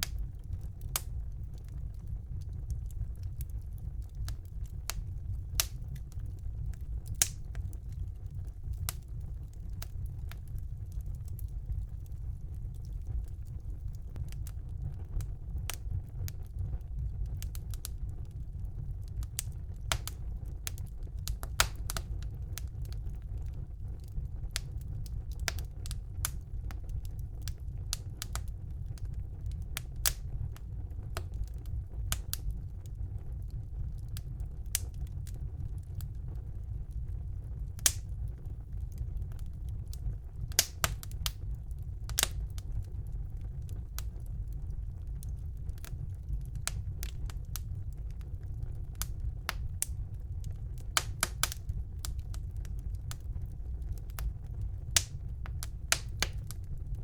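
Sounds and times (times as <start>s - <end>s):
fire crackling and popping: 0.0s - 57.0s
fire flames rumbling: 0.0s - 57.0s.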